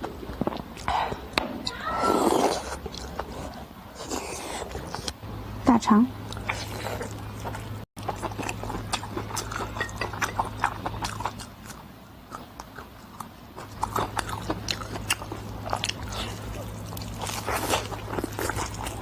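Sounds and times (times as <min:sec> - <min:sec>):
person chewing and biting food: 0:00.0 - 0:05.2, 0:06.2 - 0:19.0.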